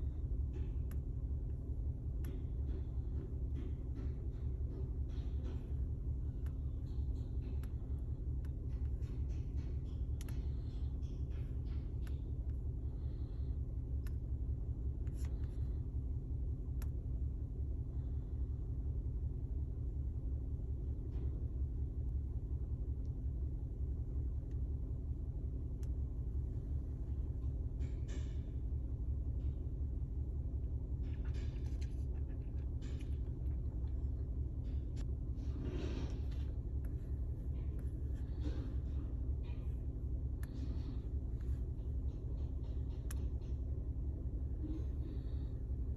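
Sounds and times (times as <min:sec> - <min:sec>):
light clicks and taps: 0:00.4 - 0:14.3, 0:36.3 - 0:43.8.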